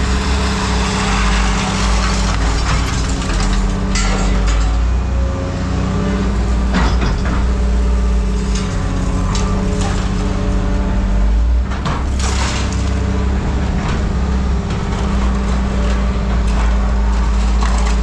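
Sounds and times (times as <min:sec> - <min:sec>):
scrap metal clanking: 0:00.0 - 0:04.9, 0:14.7 - 0:18.0
heavy machine droning: 0:00.0 - 0:18.0.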